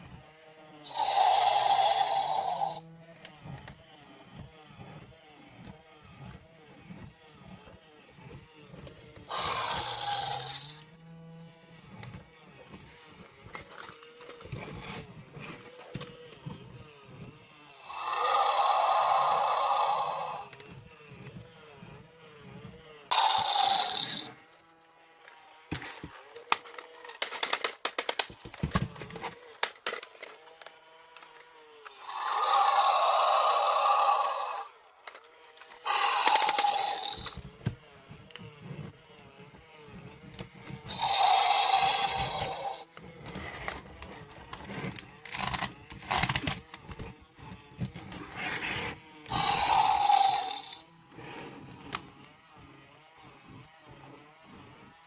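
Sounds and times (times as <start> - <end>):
toy electronic sound effects: 0.9 - 2.8, 9.3 - 10.8, 17.7 - 20.6, 23.1 - 24.4, 31.9 - 35.2, 35.8 - 37.5, 40.9 - 42.9, 49.3 - 50.8
plastic clicking and rattling: 25.7 - 31.4, 35.0 - 37.7, 43.2 - 47.1.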